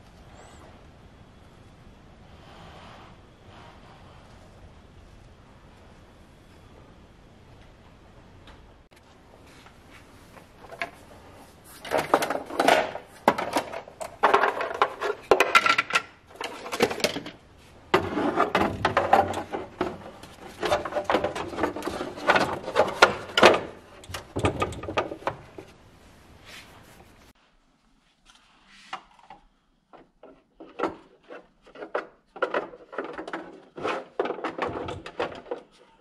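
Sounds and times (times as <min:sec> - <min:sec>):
clicks and knocks of parts: 0:11.8 - 0:25.7.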